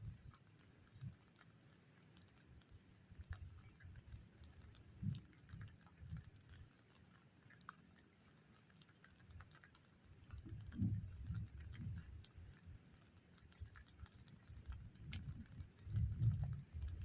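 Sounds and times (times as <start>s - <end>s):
faint low bumps: 10.4s - 12.2s.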